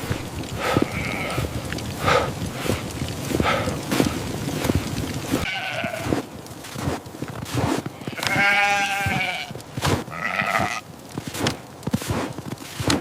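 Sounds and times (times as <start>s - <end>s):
sheep bleating: 0.6s - 1.6s, 5.4s - 6.2s, 8.0s - 10.8s.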